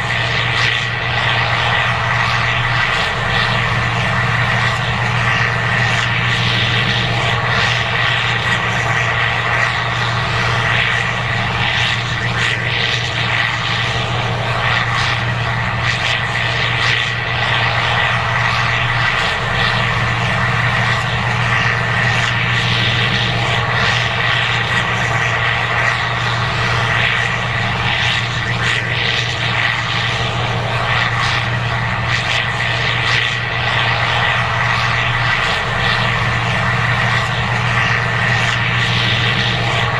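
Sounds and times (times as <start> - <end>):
combine harvester drone: 0.0 - 39.9.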